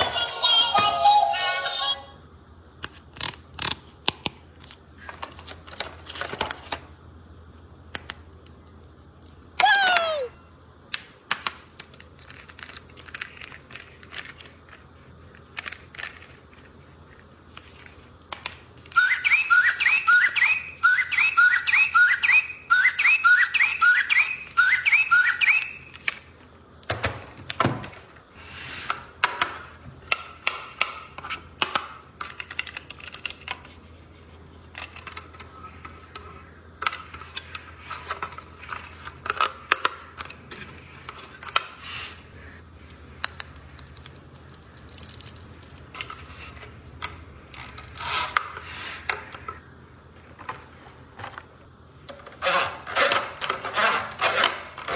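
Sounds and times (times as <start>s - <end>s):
squeaky toy chirps: 9.6s - 10.4s.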